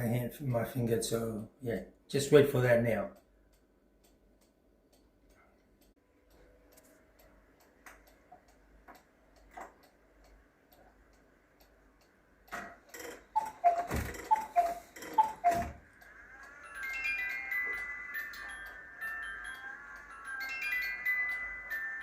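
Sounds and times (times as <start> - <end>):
clock ticking softly: 1.9 - 21.8
clock mechanism clicks: 2.9 - 22.0
two-note cuckoo call: 13.4 - 21.8.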